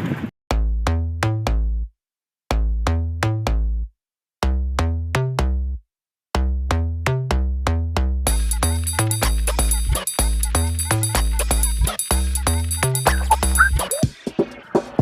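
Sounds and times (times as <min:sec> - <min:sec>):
bass-heavy synth riff: 0:06.4 - 0:14.0.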